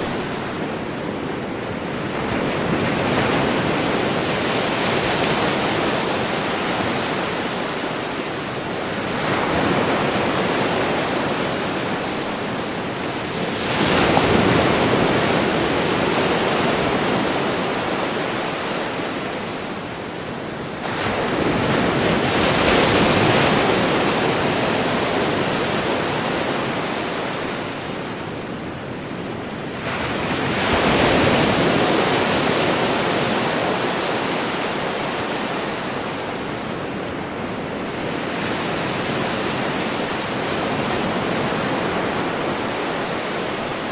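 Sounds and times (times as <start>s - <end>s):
sea waves surging and washing: 0.0s - 43.9s.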